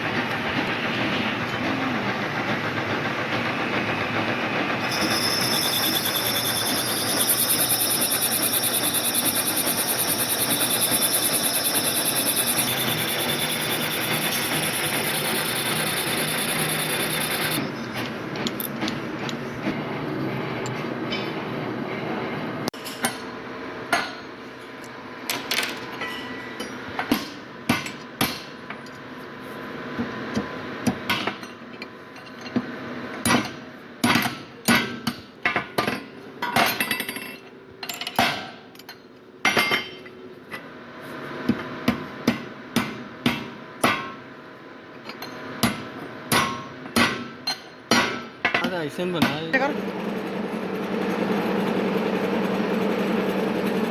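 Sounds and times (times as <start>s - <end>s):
steady machine noise: 0.0s - 18.6s.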